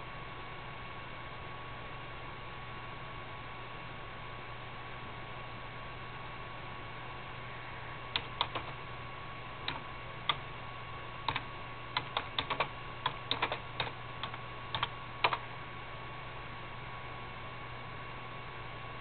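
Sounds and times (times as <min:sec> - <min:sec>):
low hum and hiss: 0:00.0 - 0:19.0.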